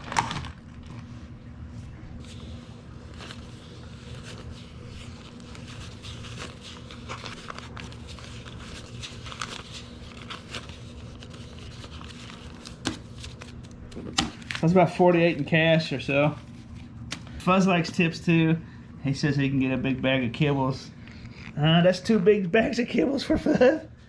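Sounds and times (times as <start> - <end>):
banknotes rustling and crinkling: 0.0 - 1.2, 2.2 - 17.9.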